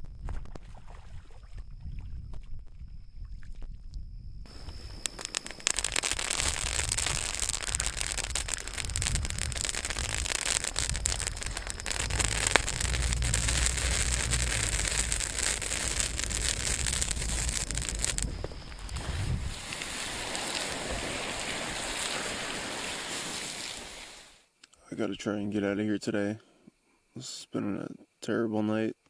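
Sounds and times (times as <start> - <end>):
campfire crackling and popping: 4.5 - 24.4
low rumble: 5.9 - 19.7.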